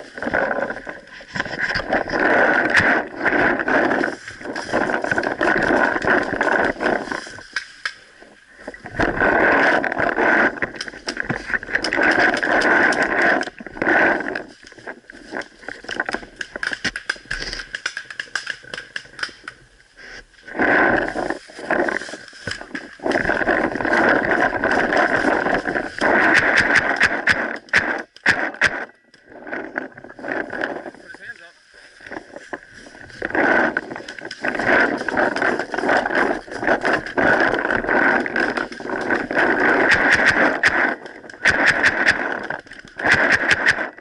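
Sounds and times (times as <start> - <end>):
paintball marker shots: 26.0 - 28.9, 38.0 - 43.9.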